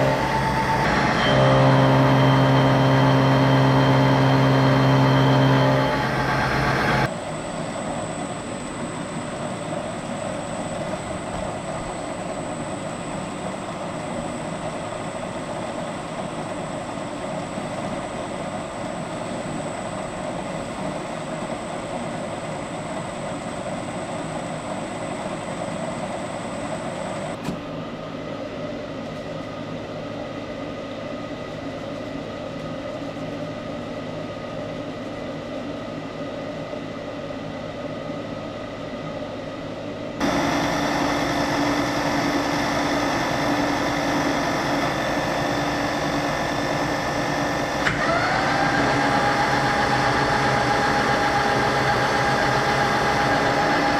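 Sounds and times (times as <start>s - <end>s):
machine tool running: 0.0s - 27.4s, 40.2s - 53.9s
thin high whine: 0.0s - 27.4s, 40.2s - 53.9s.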